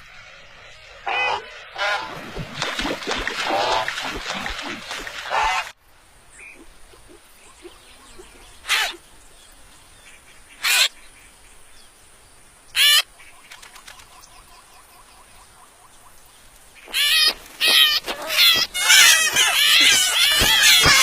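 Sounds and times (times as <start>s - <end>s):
animal high-pitched calls: 16.9s - 21.0s.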